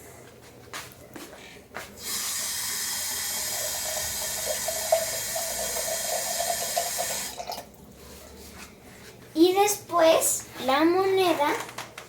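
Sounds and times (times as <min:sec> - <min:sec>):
water pouring into a glass: 0:02.0 - 0:07.7.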